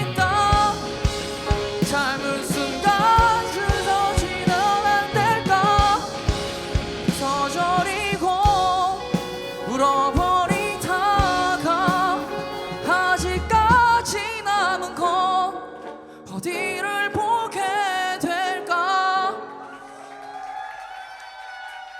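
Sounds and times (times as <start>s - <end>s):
live band playing: 0.0s - 15.2s
person singing with vibrato: 0.0s - 19.9s.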